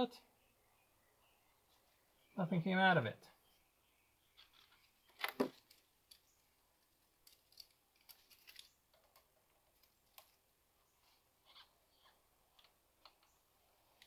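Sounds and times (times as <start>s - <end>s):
faint clicks and taps: 11.4s - 13.4s.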